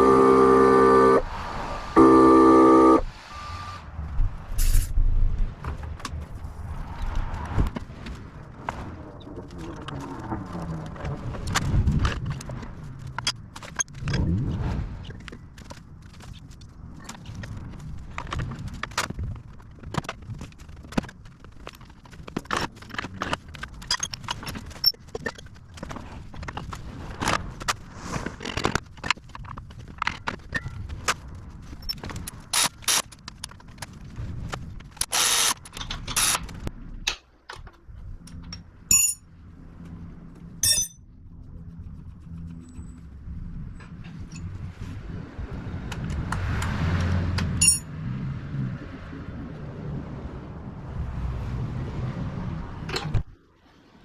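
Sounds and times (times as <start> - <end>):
short bursts of noise: 0.0 - 5.0, 35.1 - 35.6
tools and metal parts clinking: 22.9 - 25.5, 38.4 - 39.2, 40.6 - 41.0, 47.6 - 47.9.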